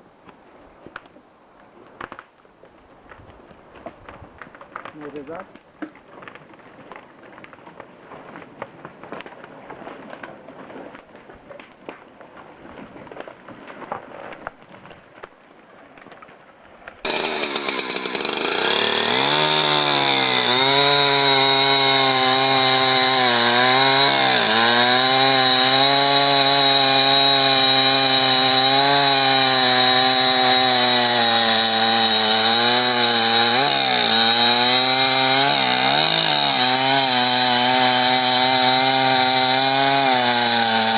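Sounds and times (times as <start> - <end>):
chainsaw cutting wood: 17.0 - 40.9.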